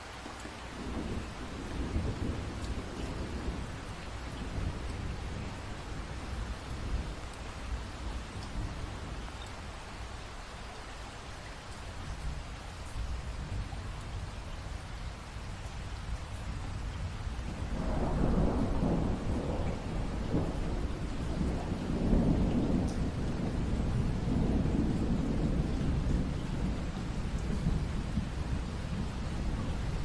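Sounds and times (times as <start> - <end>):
steady rain: 0.0 - 30.0
thunder rumbling: 0.7 - 9.4, 15.6 - 30.0.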